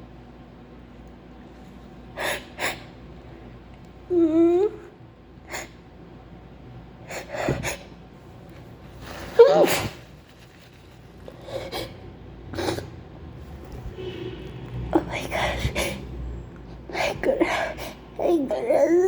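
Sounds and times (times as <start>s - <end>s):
woman sneezing: 9.3s - 10.0s.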